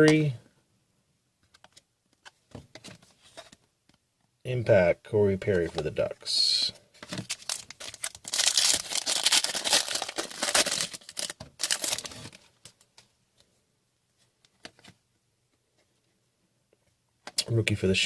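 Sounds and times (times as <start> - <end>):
foil wrapper crinkling and tearing: 7.2 - 12.4.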